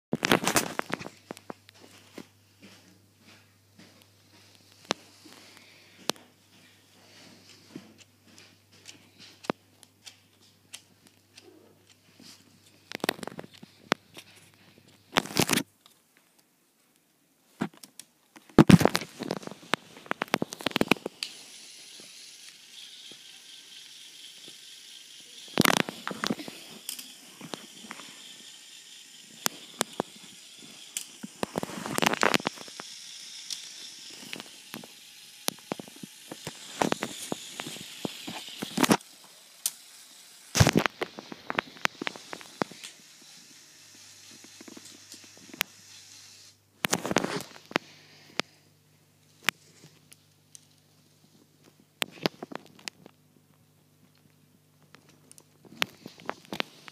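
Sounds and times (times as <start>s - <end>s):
faint high whine: 18.6s - 54.6s.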